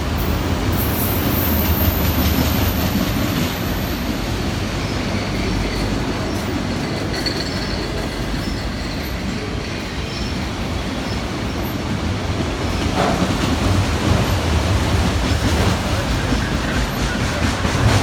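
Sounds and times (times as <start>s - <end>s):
freight train rumbling past: 0.0s - 18.0s
wheel squeals: 4.9s - 10.4s.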